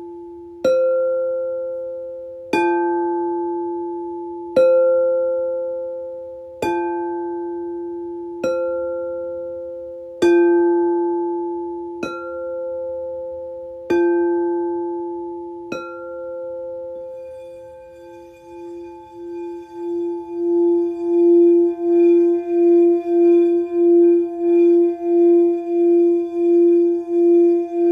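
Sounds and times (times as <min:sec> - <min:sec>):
wavering pulsing tone: 0:16.6 - 0:27.9
singing bowls struck ringing: 0:17.0 - 0:27.9.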